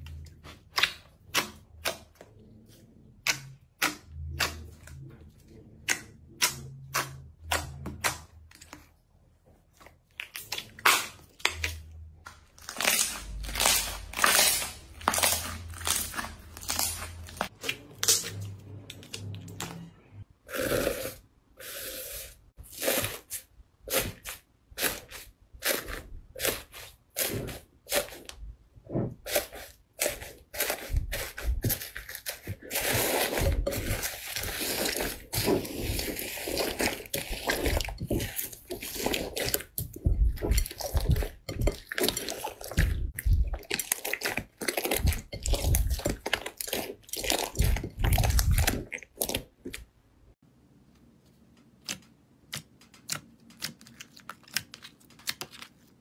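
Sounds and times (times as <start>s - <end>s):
crunchy slime crackling: 9.9s - 19.6s, 29.2s - 49.9s.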